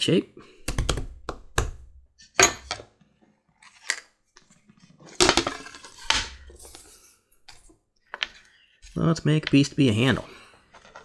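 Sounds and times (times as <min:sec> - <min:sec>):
metal tools clattering on workbench: 0:02.4 - 0:02.8.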